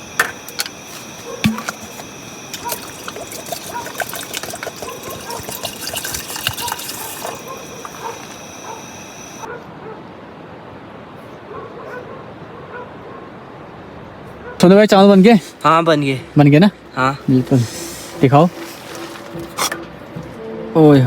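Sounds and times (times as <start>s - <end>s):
water splashing in a pot: 0.0s - 9.5s
distant dogs barking: 0.0s - 10.1s, 11.4s - 13.4s, 14.2s - 14.8s.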